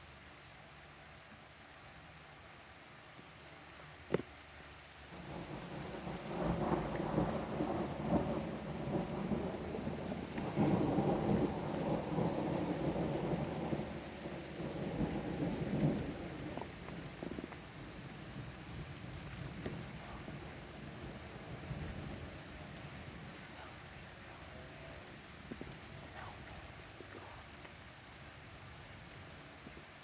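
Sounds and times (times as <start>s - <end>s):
rain falling: 0.0s - 30.0s
thunder rolling: 5.2s - 27.7s.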